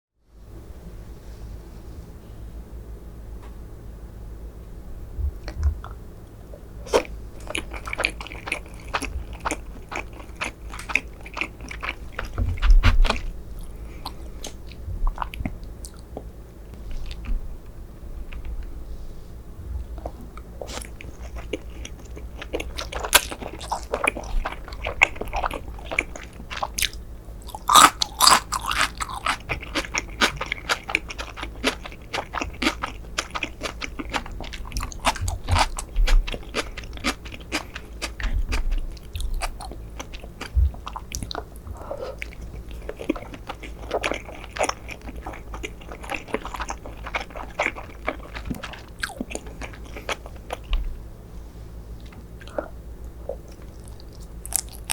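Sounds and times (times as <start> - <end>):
sushi being bitten and chewed: 6.9 - 16.3, 19.9 - 50.9, 52.0 - 54.9.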